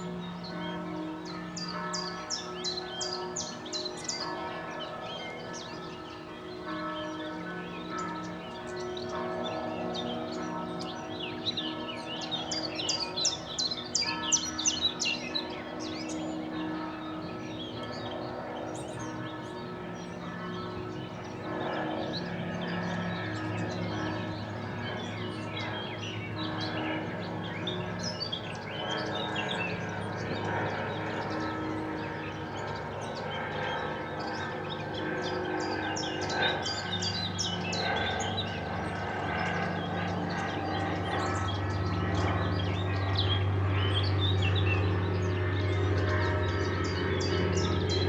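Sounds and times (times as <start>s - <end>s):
distant church bells ringing: 0.0s - 48.0s
small birds chirping: 20.9s - 48.0s.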